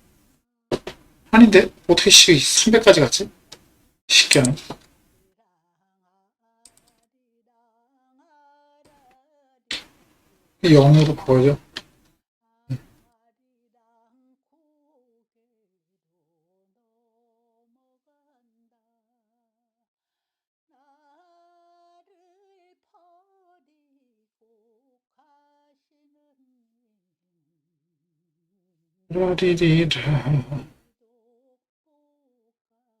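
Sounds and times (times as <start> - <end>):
faint singing voice: 5.4 - 10.0, 12.5 - 15.6, 20.7 - 26.8.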